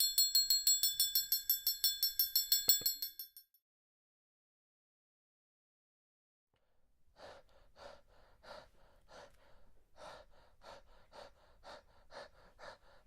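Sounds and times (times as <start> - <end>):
quick panting breaths: 7.1 - 13.0.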